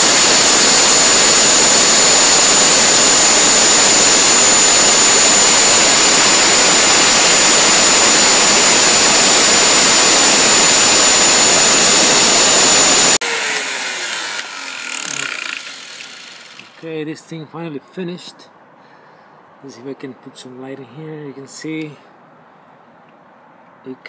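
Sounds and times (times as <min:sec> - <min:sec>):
router spindle whining: 0:00.0 - 0:16.8.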